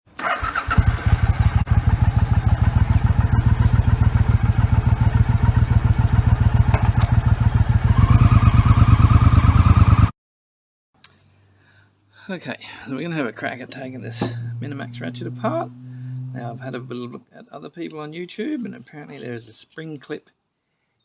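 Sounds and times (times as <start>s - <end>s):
motorcycle engine running: 0.2s - 10.1s.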